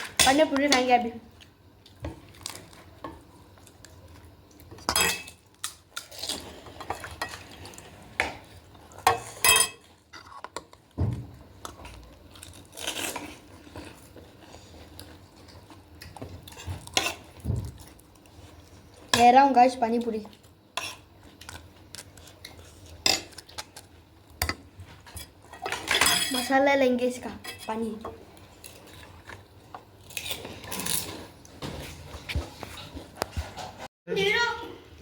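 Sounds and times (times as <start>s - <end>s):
cutlery and dishes clinking: 4.8s - 5.4s, 9.1s - 10.6s, 24.4s - 26.5s.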